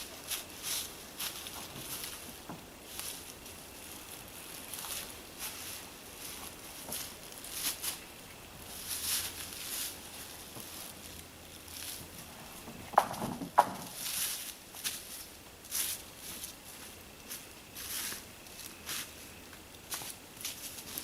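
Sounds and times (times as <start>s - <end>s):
footsteps on dry forest litter: 0.0s - 21.0s
sharp knocks: 12.9s - 14.0s.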